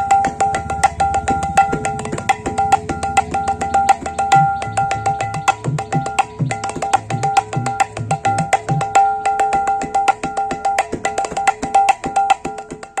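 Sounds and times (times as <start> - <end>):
hand drum deep bass strokes: 0.0 - 7.3
hand drum treble strokes: 0.0 - 13.0.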